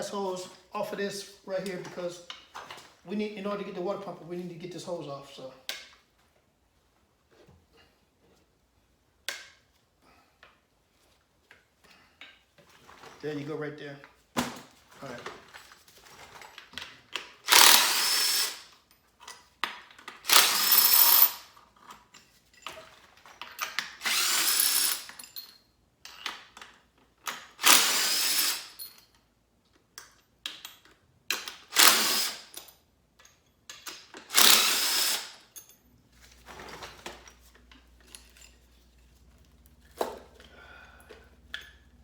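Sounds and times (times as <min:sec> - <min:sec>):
handheld power tool bursts: 0:17.2 - 0:18.8, 0:20.1 - 0:21.5, 0:23.6 - 0:25.3, 0:27.3 - 0:29.0, 0:31.3 - 0:32.7, 0:33.8 - 0:35.6.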